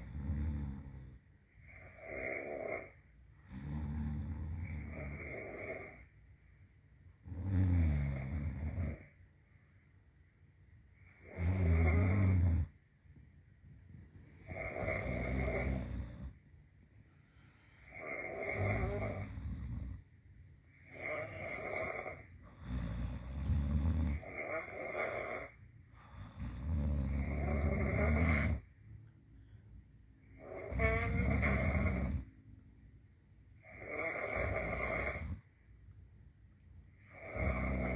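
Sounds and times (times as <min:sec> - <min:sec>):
people snoring: 0:00.0 - 0:06.1, 0:07.2 - 0:09.2, 0:11.0 - 0:12.7, 0:14.4 - 0:16.4, 0:17.8 - 0:20.0, 0:20.8 - 0:28.7, 0:30.3 - 0:32.3, 0:33.6 - 0:35.4, 0:37.0 - 0:37.9
quiet breathing: 0:00.0 - 0:35.8.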